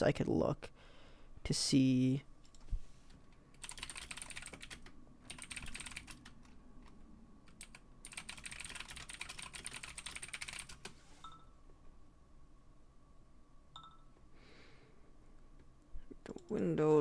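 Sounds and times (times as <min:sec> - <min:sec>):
typing on computer keyboard: 0:03.6 - 0:06.6, 0:07.5 - 0:11.0.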